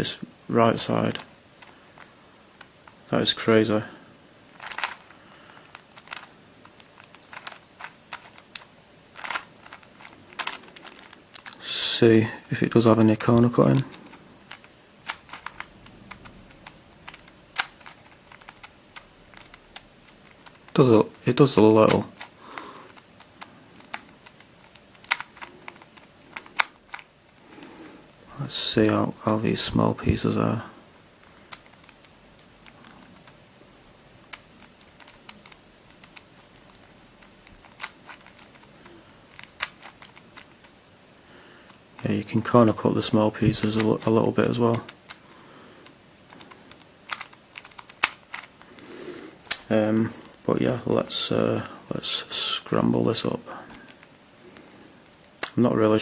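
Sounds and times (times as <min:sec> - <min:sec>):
plastic puzzle pieces clicking: 0:04.5 - 0:11.6, 0:13.0 - 0:27.4, 0:31.2 - 0:33.4, 0:34.3 - 0:40.8, 0:42.9 - 0:45.2, 0:45.8 - 0:50.4, 0:55.2 - 0:55.6
sharp plastic clacks: 0:04.5 - 0:11.6, 0:13.0 - 0:27.6, 0:31.2 - 0:33.4, 0:34.3 - 0:40.8, 0:43.4 - 0:45.2, 0:45.8 - 0:50.4, 0:55.2 - 0:55.7.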